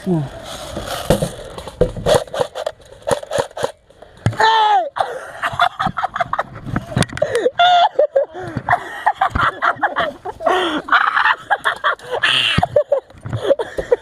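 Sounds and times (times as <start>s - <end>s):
person laughing hard: 4.4s - 14.0s.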